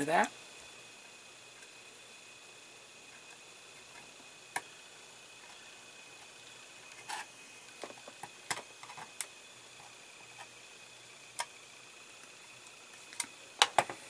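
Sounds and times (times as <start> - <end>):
plastic parts clicking and tapping: 13.1 - 14.0.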